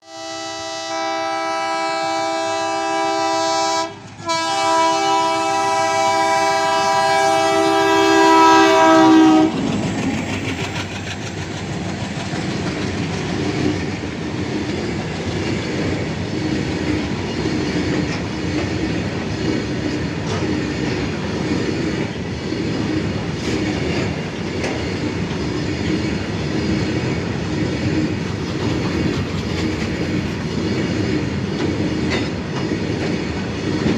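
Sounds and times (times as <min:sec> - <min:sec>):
locomotive horn blasts: 0:00.0 - 0:09.7
freight train rumbling past: 0:00.0 - 0:33.9.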